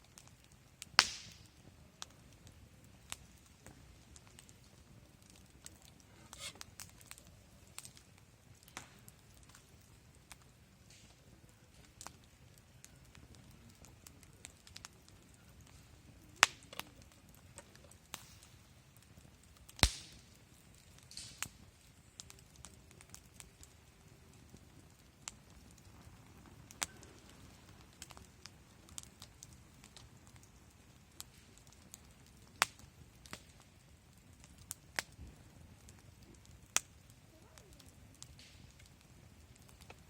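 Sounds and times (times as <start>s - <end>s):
campfire pops and crackles: 0.0s - 40.0s
faint steady hiss: 0.0s - 40.0s.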